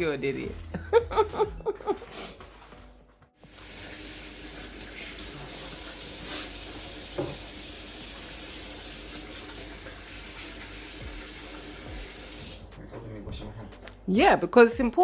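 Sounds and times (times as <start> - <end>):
tap running into sink: 3.4 - 12.6.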